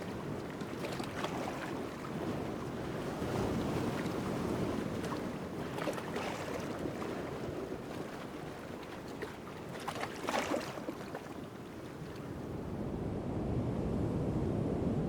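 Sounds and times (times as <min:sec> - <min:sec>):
waves lapping on rocks: 0:00.0 - 0:12.4
ocean roar: 0:00.0 - 0:15.0
water splash: 0:09.8 - 0:11.3.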